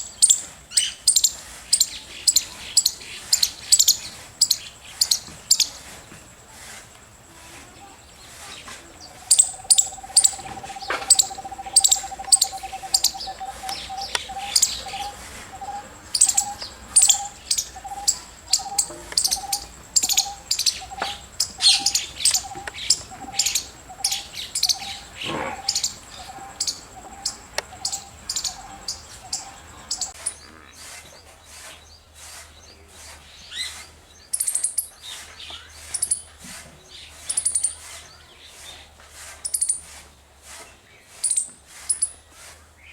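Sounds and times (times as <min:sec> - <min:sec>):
squirrel chirping: 0:00.0 - 0:05.8, 0:08.9 - 0:30.6, 0:34.3 - 0:35.0, 0:35.9 - 0:36.2, 0:37.2 - 0:37.8
low pulsing call: 0:08.8 - 0:30.4.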